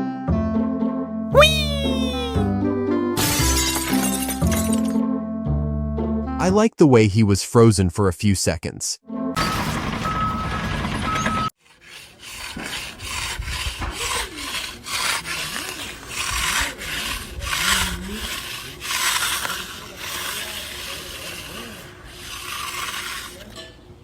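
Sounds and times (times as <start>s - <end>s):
rough scraping strokes: 11.5s - 23.8s.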